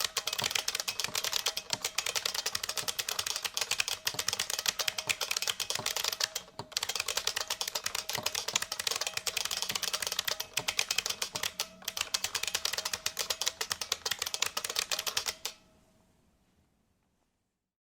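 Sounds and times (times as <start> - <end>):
fast typing on clicky keyboard: 0.0 - 15.6.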